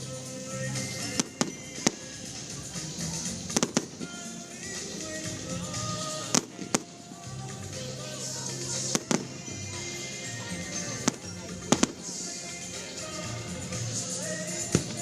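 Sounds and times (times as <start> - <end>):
music: 0.0 - 15.0
fireworks bangs: 0.9 - 2.4, 3.1 - 7.4, 8.7 - 9.6, 10.7 - 12.3.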